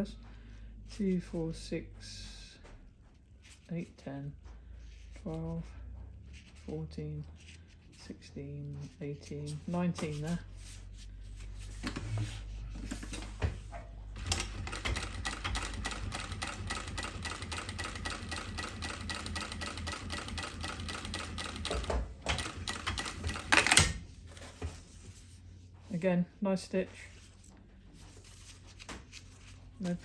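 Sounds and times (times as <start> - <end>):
sewing machine motor humming: 14.2 - 23.8
sewing machine needle strokes: 14.2 - 23.8.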